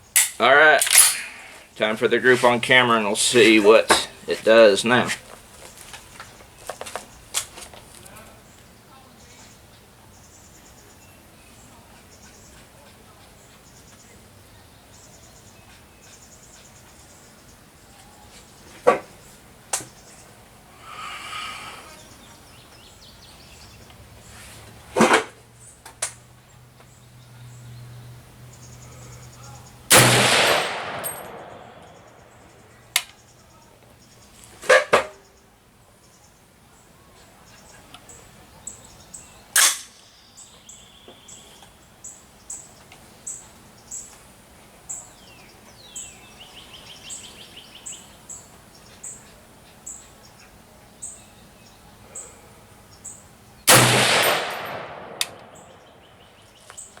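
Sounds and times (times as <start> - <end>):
small birds chirping: 0.0 - 24.9, 25.6 - 29.9, 31.3 - 34.6, 35.2 - 53.7, 54.7 - 57.0
rifle shots with echo: 29.9 - 32.5, 39.6 - 40.0, 53.7 - 56.2.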